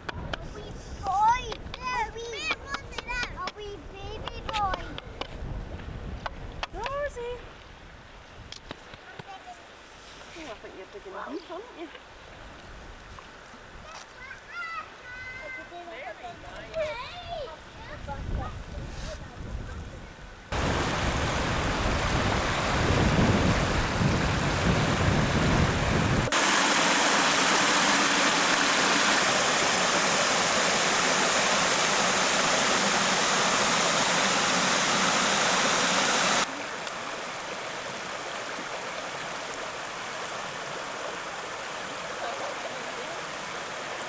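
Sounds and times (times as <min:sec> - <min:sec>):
stream rushing: 0:20.5 - 0:44.0.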